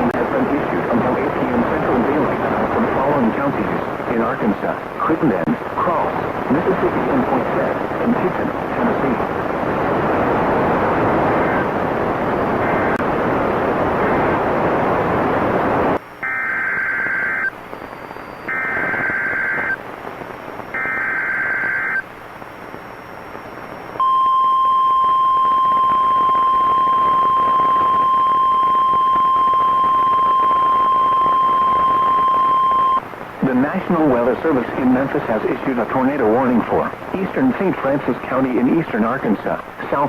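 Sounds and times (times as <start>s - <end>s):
radio static: 0.0s - 40.0s
steady alarm tone: 16.2s - 17.5s, 18.1s - 19.8s, 20.7s - 22.0s
digital data bursts: 16.2s - 19.8s, 20.4s - 22.1s.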